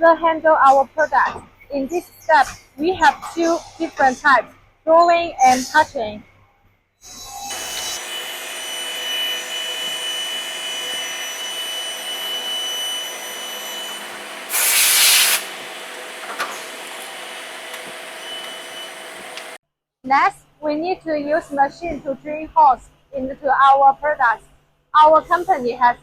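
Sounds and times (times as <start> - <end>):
machining equipment whine and hum: 7.5 - 19.6
loud hiss: 13.6 - 19.6.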